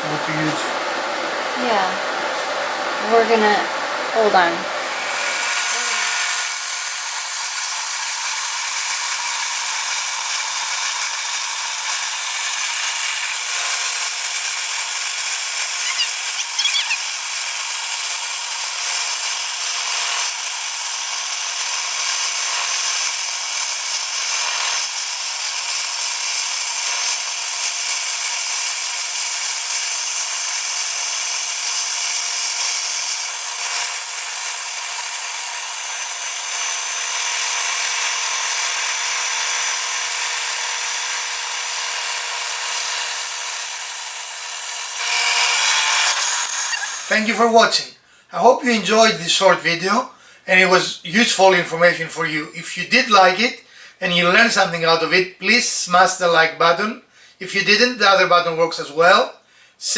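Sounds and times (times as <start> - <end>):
power tool whining on wood: 4.6 - 47.6.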